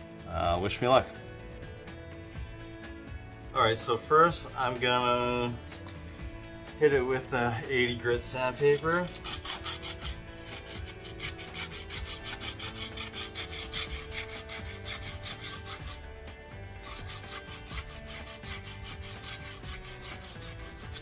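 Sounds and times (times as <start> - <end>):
sandpaper rubbing on wheel rim: 8.3 - 21.0.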